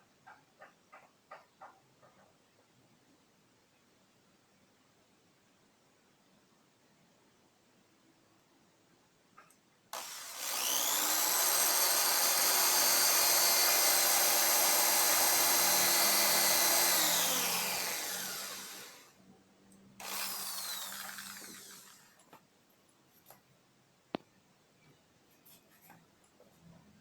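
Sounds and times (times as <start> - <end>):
electric drill spinning saw blade: 10.0 - 19.1, 20.0 - 22.2.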